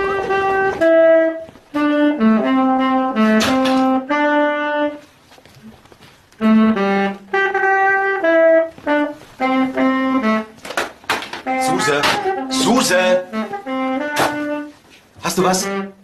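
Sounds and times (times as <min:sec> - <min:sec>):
saxophone held notes: 0:00.0 - 0:05.7, 0:06.4 - 0:10.7, 0:11.4 - 0:14.9.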